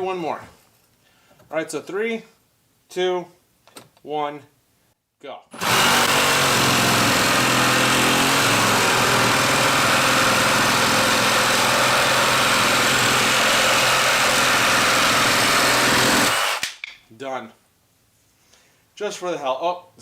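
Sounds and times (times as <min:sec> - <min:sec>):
reciprocating saw cutting wood: 0:05.6 - 0:16.7.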